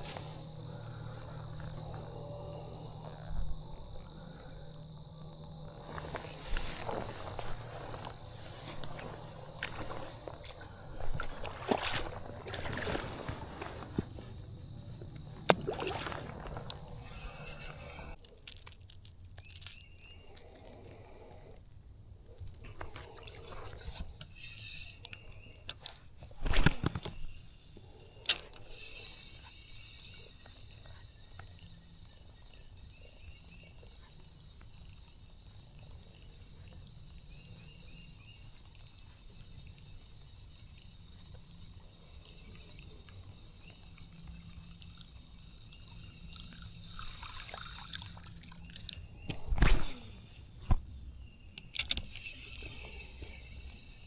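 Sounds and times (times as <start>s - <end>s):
crickets and insects chirring: 0.0s - 54.0s
sharp click: 48.8s - 52.3s.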